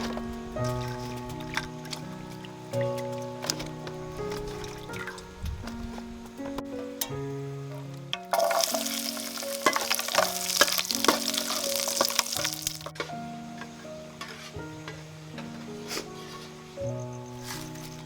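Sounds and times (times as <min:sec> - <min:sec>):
background music: 0:00.0 - 0:18.0
stirring clicks: 0:08.2 - 0:13.1
food sizzling in a pan: 0:08.3 - 0:12.9.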